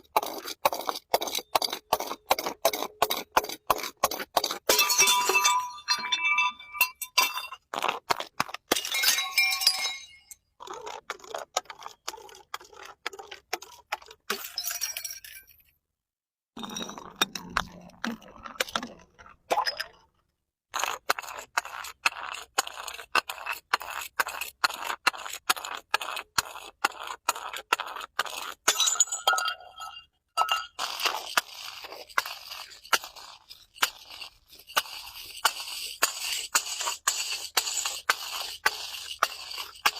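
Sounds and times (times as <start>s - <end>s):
glass breaking and crushing: 4.7s - 7.8s, 8.7s - 10.4s, 14.3s - 15.8s, 28.7s - 31.1s.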